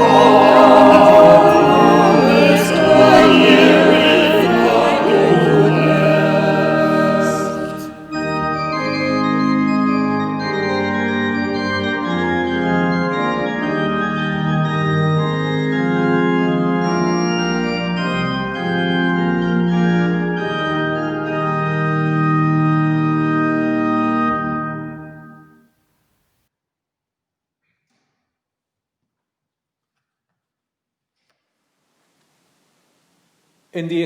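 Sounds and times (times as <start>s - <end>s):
church organ chords: 0.0s - 25.6s.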